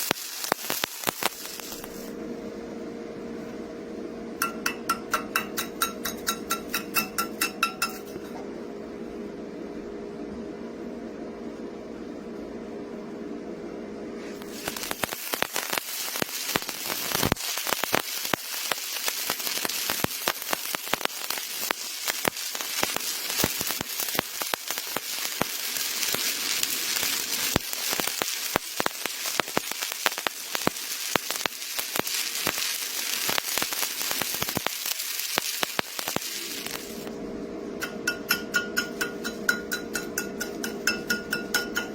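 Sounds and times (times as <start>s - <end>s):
welding arc crackling and popping: 0.0s - 2.2s, 4.4s - 8.2s, 14.4s - 37.2s.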